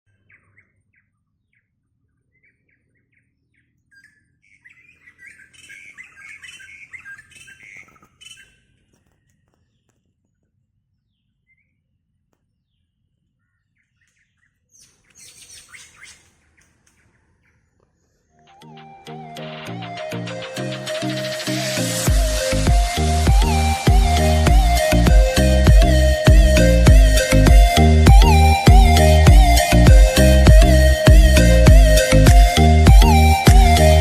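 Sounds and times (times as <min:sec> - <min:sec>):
wild birds chirping: 0:02.3 - 0:09.9, 0:13.4 - 0:34.0.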